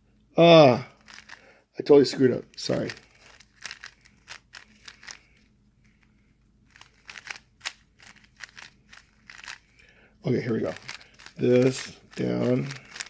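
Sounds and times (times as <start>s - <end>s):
speed cube turning clicks: 1.0s - 1.4s, 2.7s - 5.4s, 6.7s - 9.8s, 10.7s - 13.0s.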